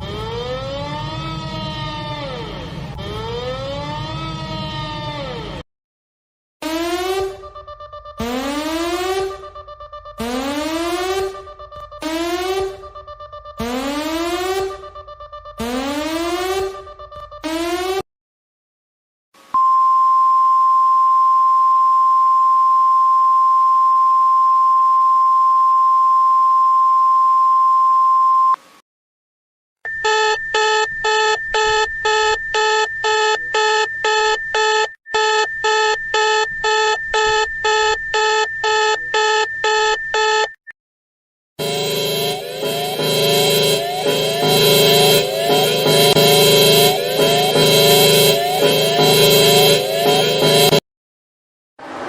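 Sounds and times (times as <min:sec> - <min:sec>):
fast pulsing electronic alarm: 0:06.6 - 0:09.6, 0:10.2 - 0:18.0, 0:29.9 - 0:40.6, 0:41.6 - 0:50.8
steady single-pitch alert tone: 0:41.6 - 0:50.8.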